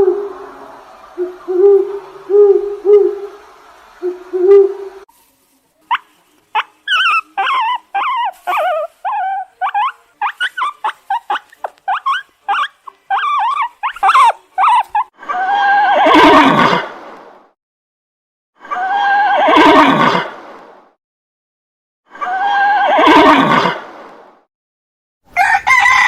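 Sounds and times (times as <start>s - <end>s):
high-pitched animal calls: 6.6s - 16.8s
horse whinny: 15.6s - 16.8s, 18.8s - 20.3s, 22.3s - 23.8s.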